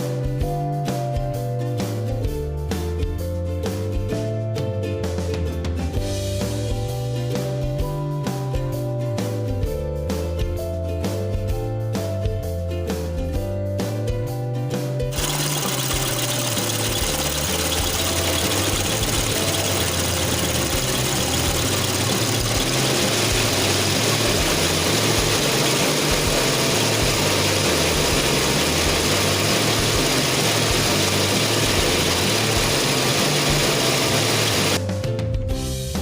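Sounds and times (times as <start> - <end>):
background music bass line: 0.3 - 36.0
loud steady machine noise: 15.1 - 34.8.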